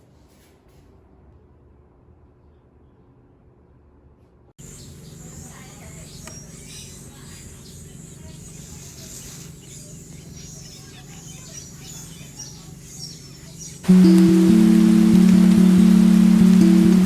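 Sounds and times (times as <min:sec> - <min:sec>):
low hum: 0:12.7 - 0:17.0.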